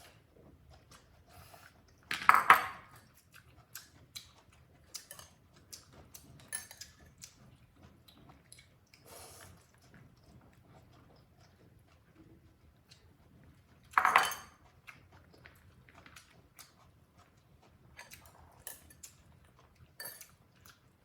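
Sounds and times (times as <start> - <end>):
dishware clattering: 2.1 - 3.0, 14.0 - 14.6.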